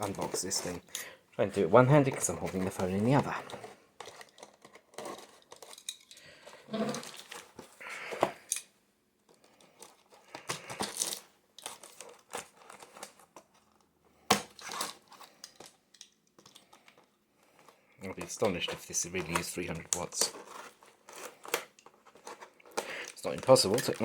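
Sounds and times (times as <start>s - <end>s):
packaging tearing and crumpling: 6.7s - 7.6s, 9.8s - 13.3s, 14.3s - 15.7s.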